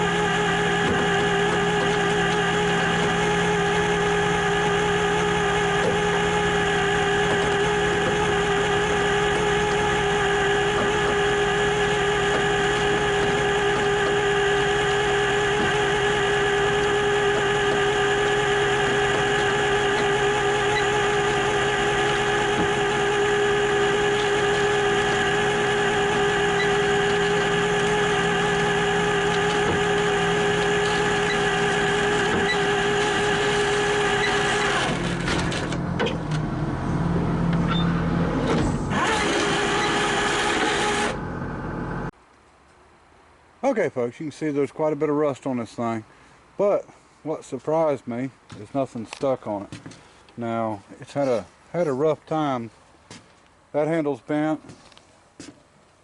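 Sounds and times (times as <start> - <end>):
engine running steadily: 0.0 - 42.2
steady whine: 0.0 - 42.2.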